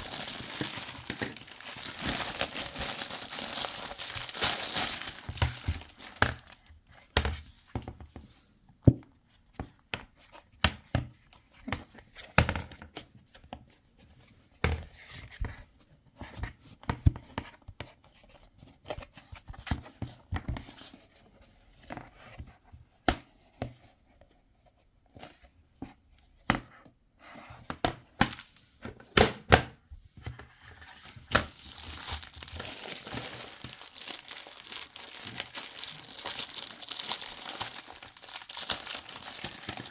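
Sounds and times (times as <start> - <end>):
plastic wrapping crinkling: 0.0 - 6.7, 28.2 - 28.6, 31.0 - 39.9.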